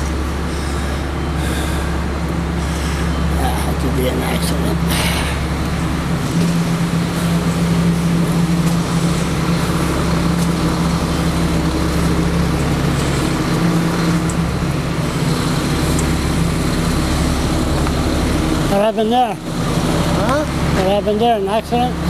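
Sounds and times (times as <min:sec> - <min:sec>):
constant low hum: 0:00.0 - 0:22.0
traffic noise: 0:00.0 - 0:22.0
vehicle engine: 0:00.0 - 0:22.0.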